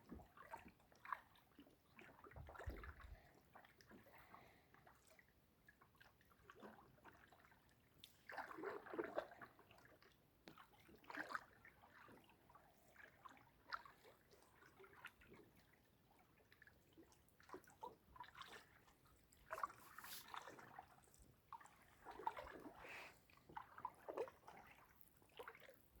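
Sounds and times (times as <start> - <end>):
paddle splashing in water: 0.1 - 4.4, 8.2 - 15.7, 17.4 - 26.0.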